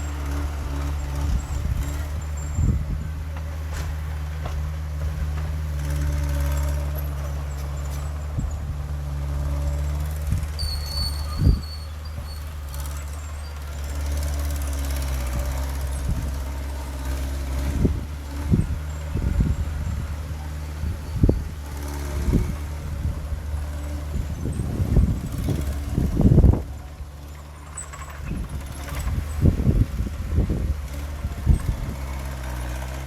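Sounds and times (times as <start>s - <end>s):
diesel engine droning: 0.0s - 33.0s
low thuds and clunks: 1.3s - 5.8s.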